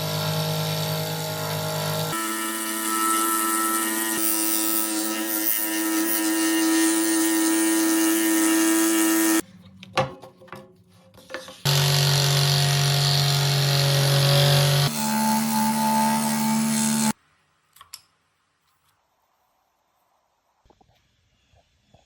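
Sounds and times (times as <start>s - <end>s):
scroll saw cutting wood: 0.0s - 9.4s, 11.6s - 17.2s.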